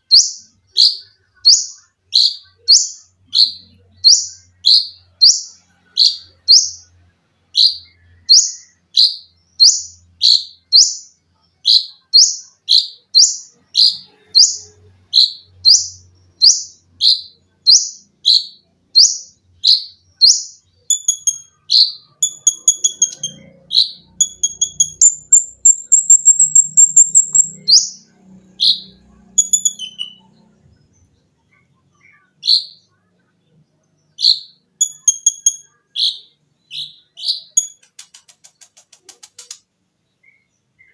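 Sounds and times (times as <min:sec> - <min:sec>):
bird fast high trill: 0:12.2 - 0:30.4, 0:34.3 - 0:36.3
bird singing shrill whistles: 0:15.2 - 0:28.0.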